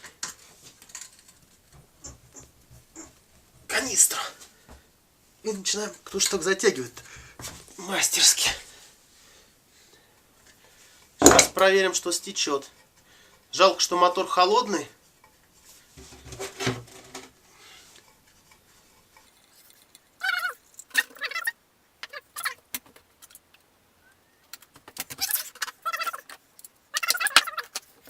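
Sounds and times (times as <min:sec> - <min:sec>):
metal hand tools clinking and squeaking: 0:19.1 - 0:22.6, 0:25.0 - 0:28.0.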